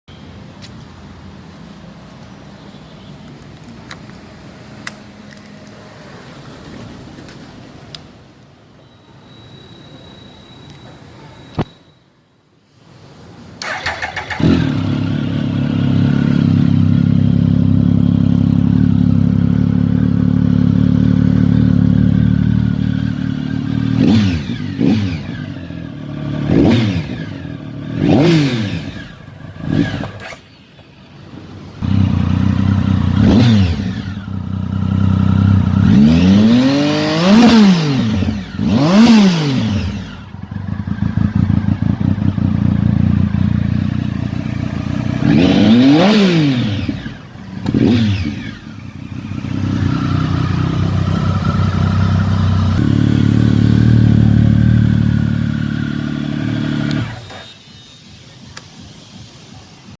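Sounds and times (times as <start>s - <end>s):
motorcycle engine idling: 13.6s - 28.0s, 28.6s - 36.1s, 39.7s - 45.5s, 46.7s - 57.2s.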